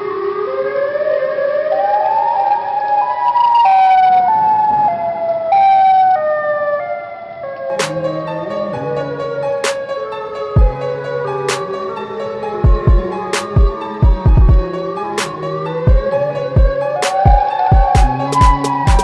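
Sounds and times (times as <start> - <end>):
goal horn siren winding: 7.3 - 19.0
music with low notes: 7.7 - 19.0.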